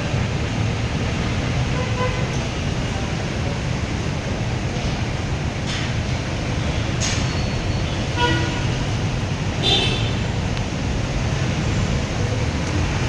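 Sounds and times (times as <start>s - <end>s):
traffic on wet street: 0.0s - 13.0s
car horn toot: 8.2s - 8.8s, 9.6s - 10.2s.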